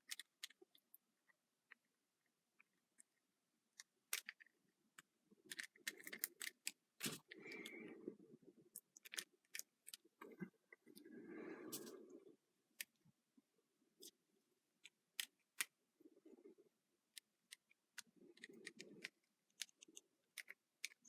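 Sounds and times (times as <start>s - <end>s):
plastic toy parts clicking: 0.0s - 0.6s, 3.8s - 7.4s, 8.8s - 10.0s, 14.8s - 15.8s, 17.1s - 21.0s.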